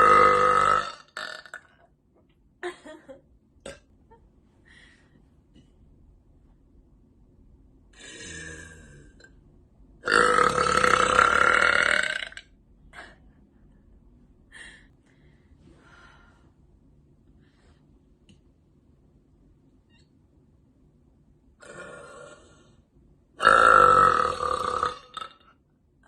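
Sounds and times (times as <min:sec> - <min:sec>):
woman burping: 0:00.0 - 0:01.8, 0:03.6 - 0:03.9, 0:08.0 - 0:09.3, 0:10.0 - 0:13.2, 0:21.6 - 0:22.5.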